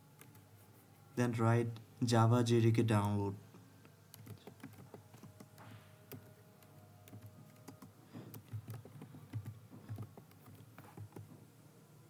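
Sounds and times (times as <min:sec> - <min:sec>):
keyboard typing clicks: 0:04.1 - 0:11.3.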